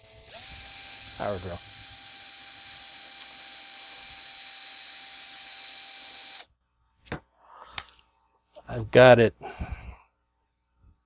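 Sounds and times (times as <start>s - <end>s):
power drill motor running: 0.0s - 6.5s.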